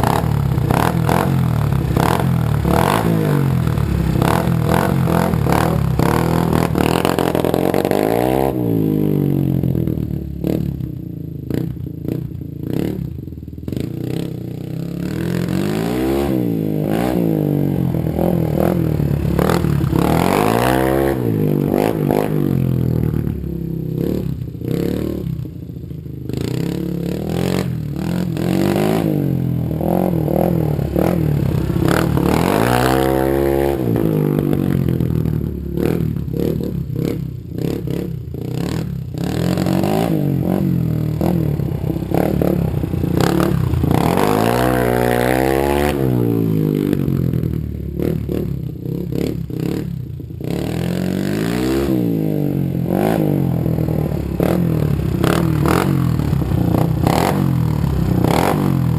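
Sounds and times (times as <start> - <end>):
motorcycle engine revving: 0.0 - 58.9.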